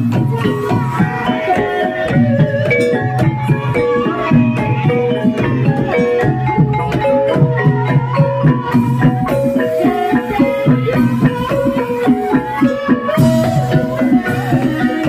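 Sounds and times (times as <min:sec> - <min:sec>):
hand drum strokes: 0:00.0 - 0:15.0
keyed percussion ringing notes: 0:00.0 - 0:15.0.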